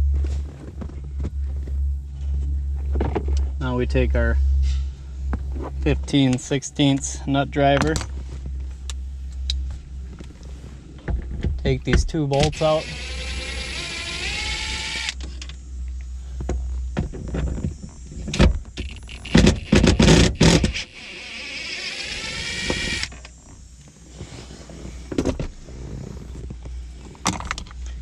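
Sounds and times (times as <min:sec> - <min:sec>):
power driver motor whine: 0:11.8 - 0:24.0.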